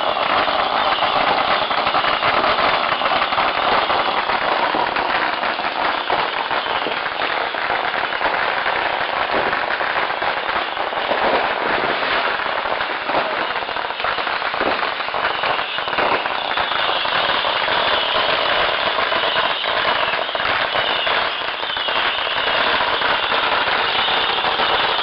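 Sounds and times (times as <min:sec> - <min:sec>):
firecrackers crackling: 0:00.0 - 0:25.0.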